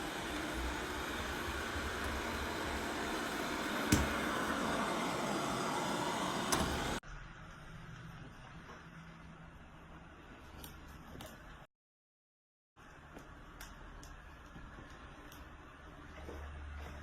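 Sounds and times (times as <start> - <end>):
robot vacuum whirring: 0.0 - 7.0.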